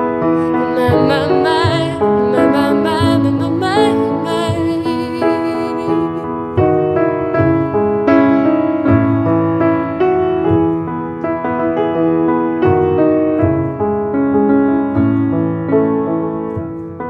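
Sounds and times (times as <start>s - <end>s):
slow piano chords: 0.0s - 17.0s
person singing: 0.4s - 6.3s.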